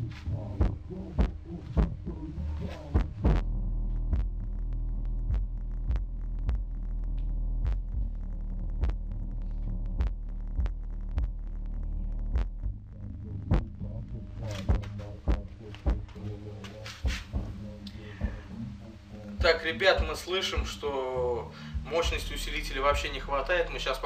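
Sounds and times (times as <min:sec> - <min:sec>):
car subwoofer playing bass music: 0:00.0 - 0:24.0
sustained deep bass note: 0:00.0 - 0:24.0.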